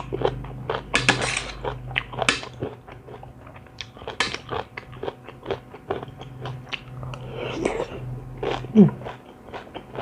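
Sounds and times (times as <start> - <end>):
crunching bites and wet chewing: 0.0 - 7.8
low steady hum: 0.0 - 10.0.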